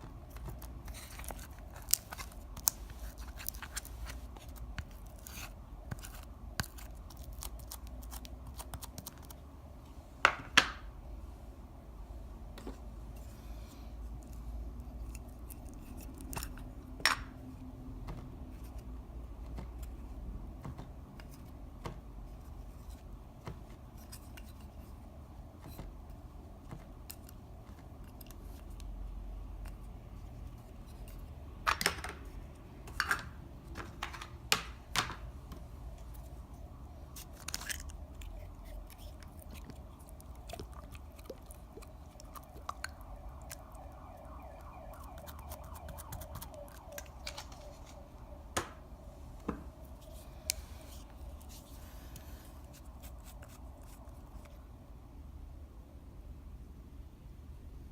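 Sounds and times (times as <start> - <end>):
slime sticky clicks and crackles: 37.1 - 47.5.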